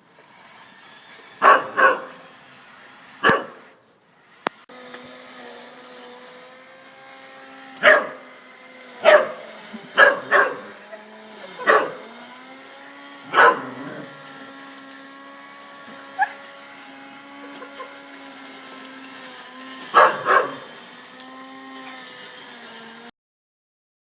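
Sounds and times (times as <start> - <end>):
electric lawn mower motor hum: 0.0 - 23.1
dog barking: 1.4 - 2.2, 3.2 - 3.6, 7.8 - 8.2, 9.0 - 10.8, 11.6 - 12.0, 13.3 - 13.9, 16.2 - 16.4, 19.9 - 20.7.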